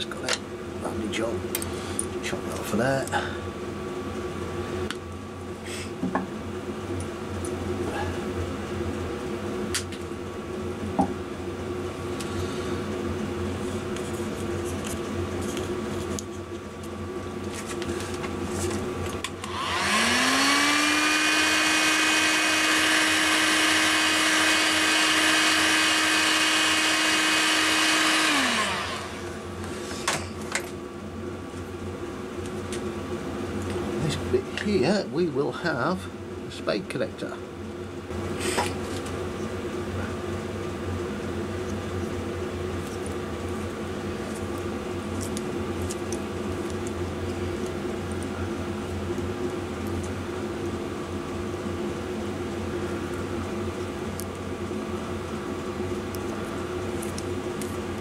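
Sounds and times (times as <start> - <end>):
steady background hum: 0.0 - 58.0
small electric motor running: 19.4 - 29.5.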